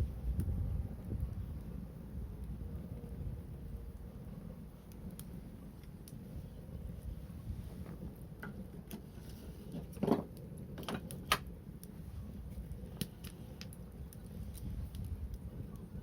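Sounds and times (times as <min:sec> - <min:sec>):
low rumble: 0:00.0 - 0:08.6
wood fire crackling and popping: 0:00.0 - 0:16.0.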